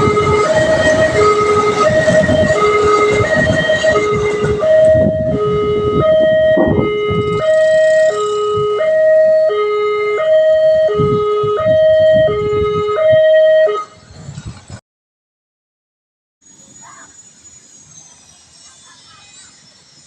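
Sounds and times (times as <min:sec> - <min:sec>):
level crossing two-tone alarm: 0:00.0 - 0:14.0.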